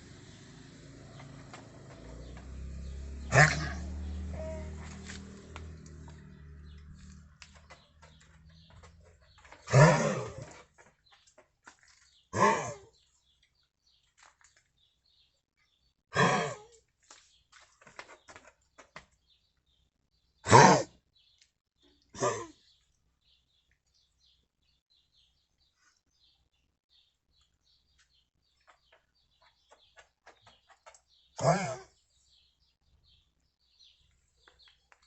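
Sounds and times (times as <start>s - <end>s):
dog coughing harshly: 3.2s - 3.8s, 9.6s - 10.6s, 16.2s - 16.7s, 20.4s - 21.0s, 31.4s - 32.0s.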